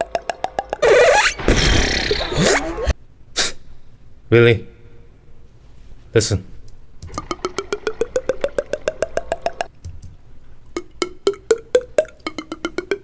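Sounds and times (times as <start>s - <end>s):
cartoon percussive knocks rising: 0.0s - 2.6s, 7.1s - 9.7s, 10.8s - 13.0s.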